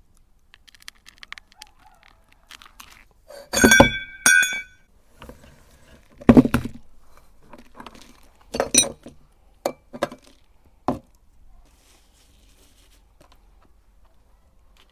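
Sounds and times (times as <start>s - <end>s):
hard objects knocking against glass: 3.5s - 4.7s.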